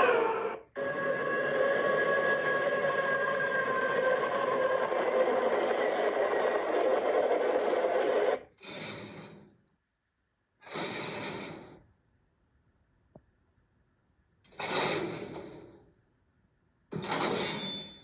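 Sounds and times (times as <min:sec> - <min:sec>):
scraping hissing rail sounds: 0:00.8 - 0:09.4.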